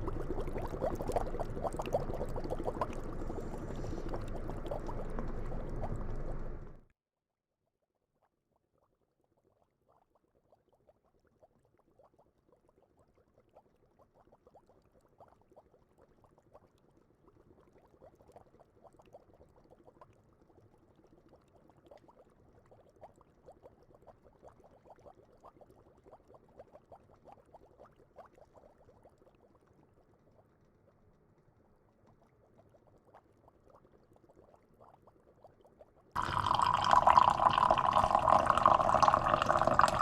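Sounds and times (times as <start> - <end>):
small bubbles ticking and popping: 0.0 - 6.9, 9.3 - 40.0.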